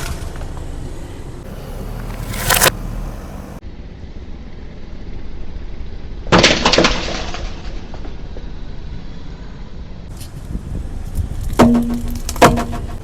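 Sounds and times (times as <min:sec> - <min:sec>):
car rumble: 0:00.0 - 0:03.6.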